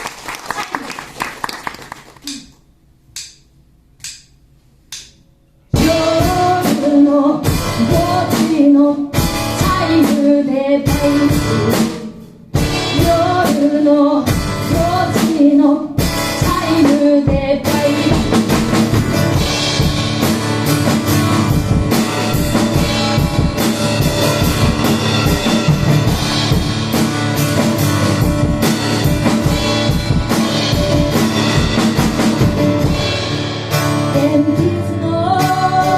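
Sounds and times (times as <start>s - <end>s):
guitar: 5.6s - 35.9s
drum kit: 5.7s - 35.9s
woman singing: 5.8s - 12.0s, 12.8s - 18.4s, 34.1s - 35.9s.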